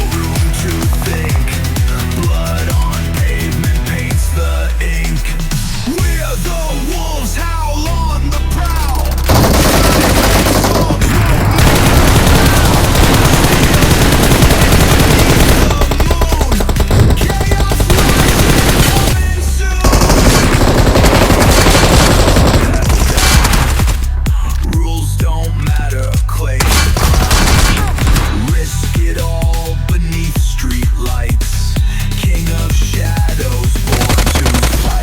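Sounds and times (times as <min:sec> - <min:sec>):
music: 0:00.0 - 0:35.0
rapid gunfire-like rattle: 0:09.0 - 0:19.2, 0:19.8 - 0:24.1, 0:26.6 - 0:28.5, 0:33.8 - 0:35.0.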